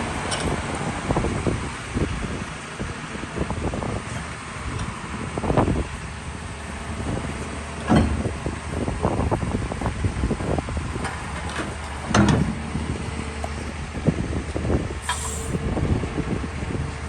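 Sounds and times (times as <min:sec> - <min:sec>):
diesel engine humming: 0:08.4 - 0:17.0
short hiss: 0:15.0 - 0:15.6.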